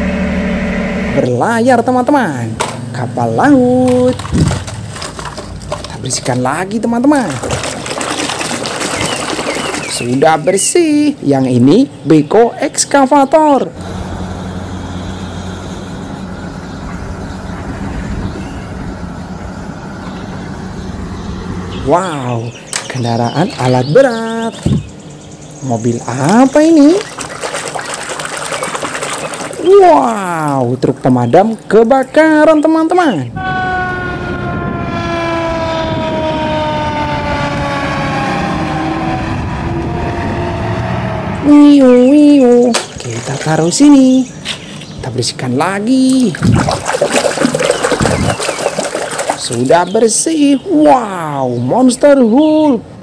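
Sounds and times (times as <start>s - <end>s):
fire engine siren: 0.0s - 1.4s, 33.3s - 41.9s
low motor hum: 0.0s - 12.4s, 13.0s - 50.2s.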